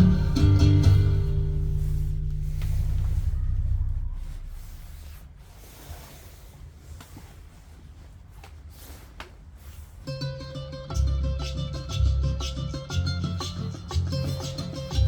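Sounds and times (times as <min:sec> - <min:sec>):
plucked guitar music: 0:00.0 - 0:04.8, 0:10.1 - 0:15.0
vinyl surface rumble: 0:00.0 - 0:08.1.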